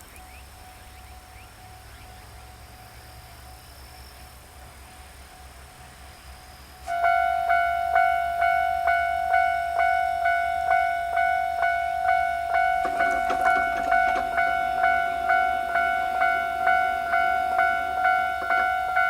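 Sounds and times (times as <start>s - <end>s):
level crossing alarm ringing: 6.8s - 19.0s.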